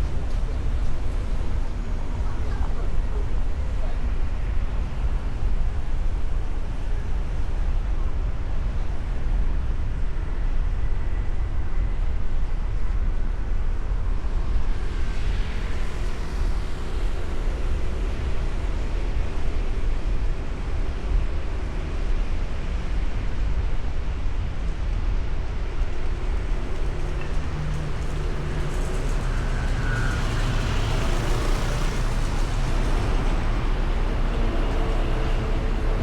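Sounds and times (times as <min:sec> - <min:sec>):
traffic engine rumble: 0:13.9 - 0:36.0.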